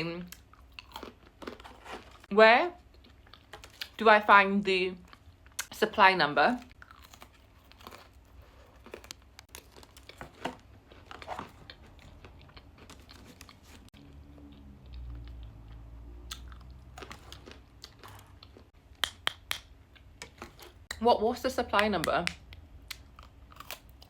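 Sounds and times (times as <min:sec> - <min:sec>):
biscuit crunching while chewed: 0:00.2 - 0:04.0, 0:06.7 - 0:18.8, 0:22.5 - 0:24.0.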